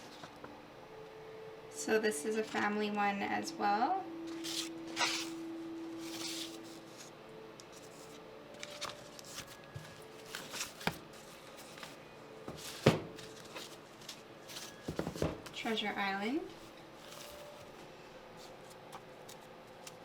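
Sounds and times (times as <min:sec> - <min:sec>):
paper pages rustling: 0:04.3 - 0:05.4, 0:06.0 - 0:07.1, 0:07.7 - 0:15.6, 0:16.5 - 0:20.0
book covers tapping: 0:08.6 - 0:13.8, 0:14.5 - 0:15.6.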